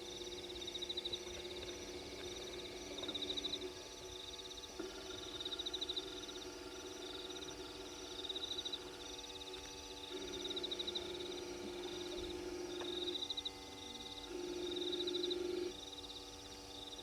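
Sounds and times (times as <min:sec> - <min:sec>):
high trilling frogs or insects: 0:00.0 - 0:17.0
low pulsing trill: 0:04.8 - 0:13.3.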